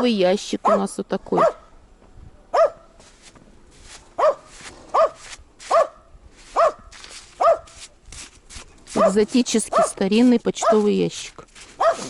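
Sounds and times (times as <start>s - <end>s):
dog barking: 0.6s - 1.7s, 2.5s - 2.9s, 4.2s - 6.0s, 6.6s - 7.8s, 9.0s - 10.0s, 10.6s - 10.9s, 11.8s - 12.0s.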